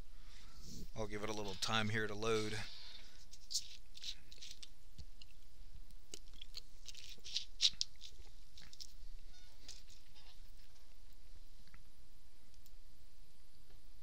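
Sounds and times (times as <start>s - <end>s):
steady hiss: 0.0s - 4.8s
small clicks and rustles: 3.1s - 11.9s.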